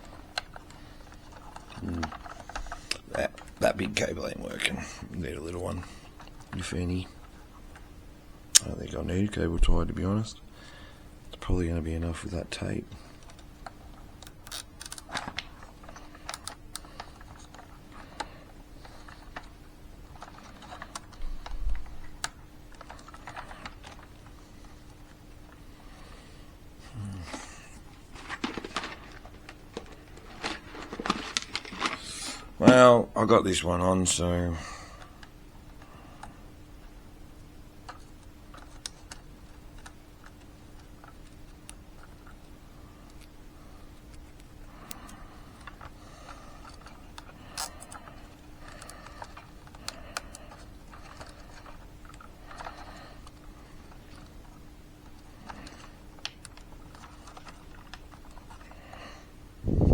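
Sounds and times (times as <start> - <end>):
plastic parts clicking: 0.0 - 3.7, 13.1 - 25.8, 27.1 - 32.8, 37.8 - 59.1
faint steady hum: 0.0 - 59.9.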